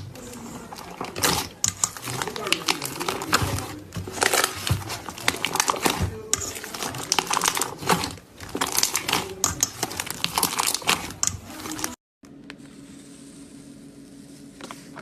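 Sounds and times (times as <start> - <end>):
slime crackling and popping: 0.9 - 12.0.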